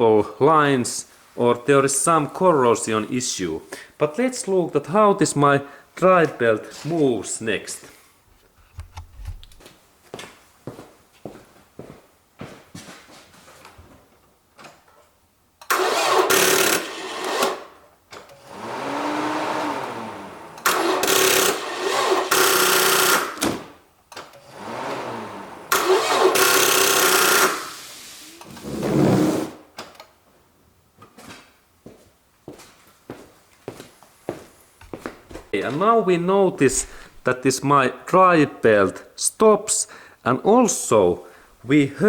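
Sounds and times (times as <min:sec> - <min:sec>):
car starter cranking engine: 0:15.6 - 0:23.4, 0:24.3 - 0:27.8
starter clicking: 0:15.6 - 0:23.5, 0:24.1 - 0:27.8.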